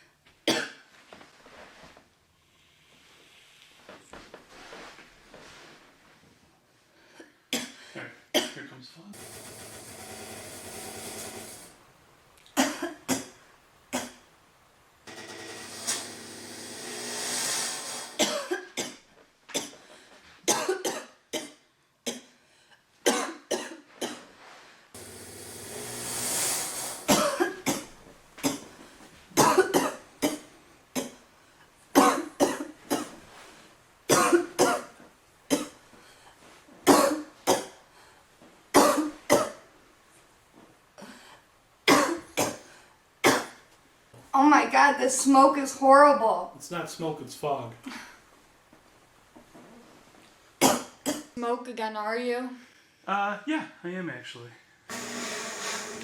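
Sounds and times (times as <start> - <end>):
woman coughing: 0.5 - 0.8, 7.6 - 8.6, 12.6 - 13.4, 18.2 - 19.0, 20.5 - 22.3, 23.1 - 24.2, 27.1 - 28.7, 29.4 - 30.4, 32.0 - 33.2, 34.1 - 35.8, 36.9 - 37.8, 38.8 - 39.6, 41.9 - 42.6, 43.3 - 43.6, 50.6 - 51.4
steady hiss: 1.5 - 6.1, 8.7 - 19.2, 23.9 - 40.5.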